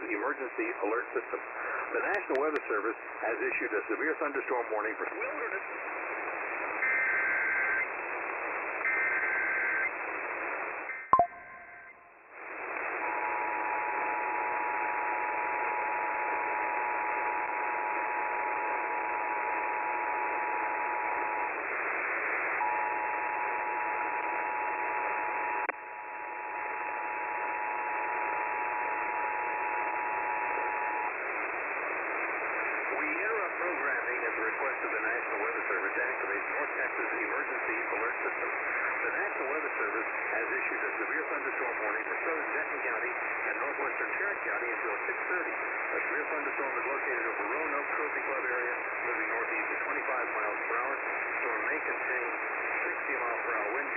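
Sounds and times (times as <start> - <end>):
radio static hiss: 0.0 - 11.0, 12.4 - 53.9
two-tone alert signal: 11.2 - 12.1.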